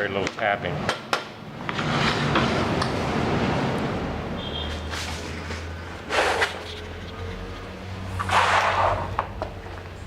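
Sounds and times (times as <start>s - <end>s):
plank scraping across floor: 1.7s - 2.6s, 8.2s - 9.2s.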